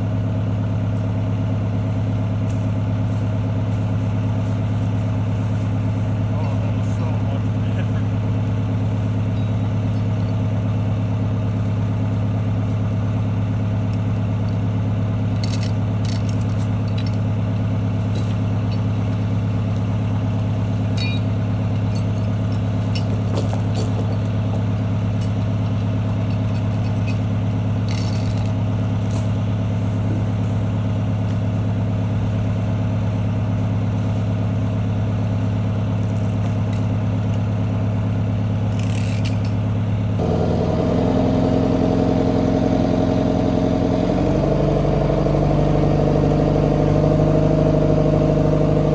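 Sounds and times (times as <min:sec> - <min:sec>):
diesel engine running: 0:00.0 - 0:48.9
clanks and rattles: 0:05.8 - 0:34.7, 0:35.3 - 0:40.2.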